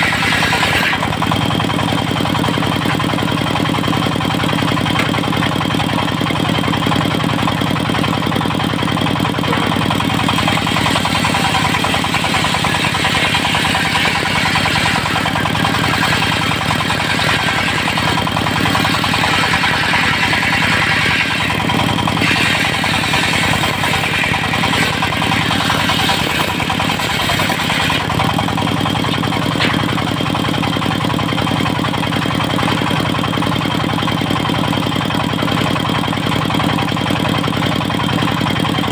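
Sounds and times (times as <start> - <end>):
saw blade cutting wood: 0.0 - 3.3, 9.0 - 30.6
diesel engine running: 0.0 - 38.9.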